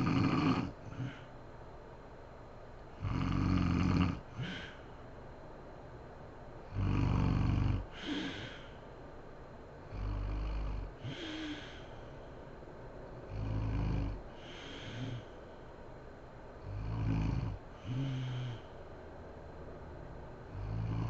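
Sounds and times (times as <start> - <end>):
woman snoring: 0.0 - 1.2, 3.0 - 4.8, 6.7 - 8.7, 9.8 - 12.0, 13.3 - 15.4, 16.6 - 18.8, 20.5 - 21.0.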